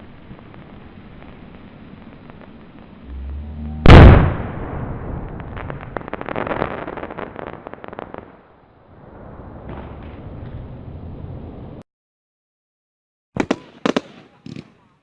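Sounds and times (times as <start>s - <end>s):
firework bang: 3.0s - 8.2s.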